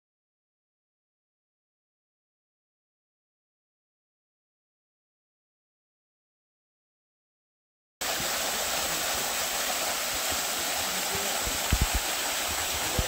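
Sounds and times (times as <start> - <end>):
waterfall roaring: 8.0 - 13.0.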